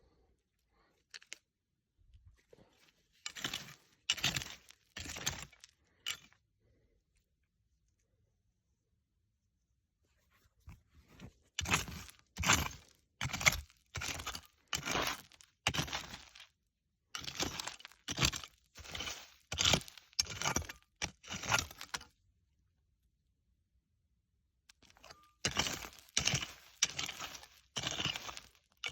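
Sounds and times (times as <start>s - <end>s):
hand tool scraping rocky dirt: 2.6s - 6.4s, 11.0s - 16.5s, 17.2s - 22.1s, 24.7s - 28.9s
stones clinking: 17.2s - 20.8s, 24.8s - 28.9s.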